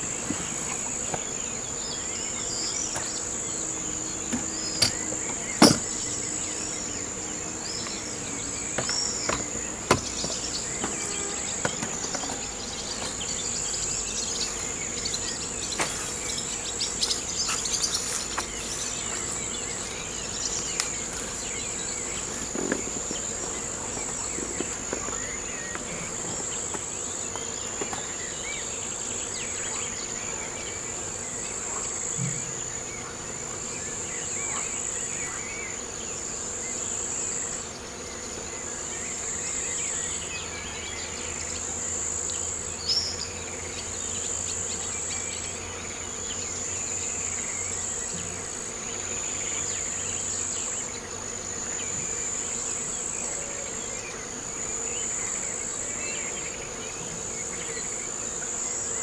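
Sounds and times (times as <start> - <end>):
bird calls: 0.0 - 30.8
insect chorus: 0.0 - 59.0.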